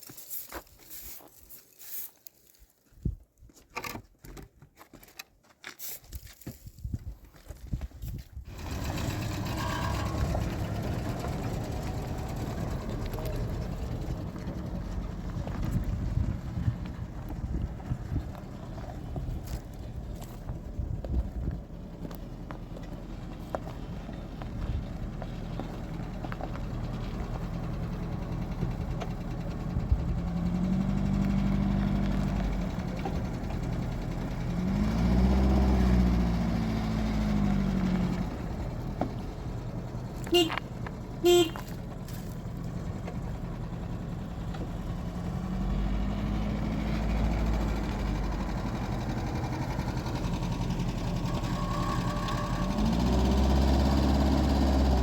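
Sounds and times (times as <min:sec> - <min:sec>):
vehicle engine revving: 0:08.5 - 0:55.0
car horn toots: 0:08.7 - 0:11.4, 0:40.2 - 0:41.8.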